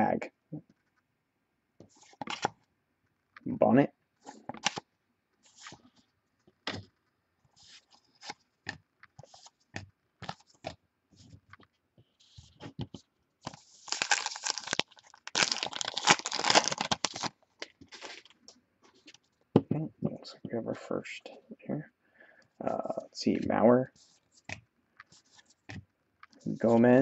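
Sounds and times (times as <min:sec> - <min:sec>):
wrapper tearing and crinkling: 0:13.7 - 0:18.3.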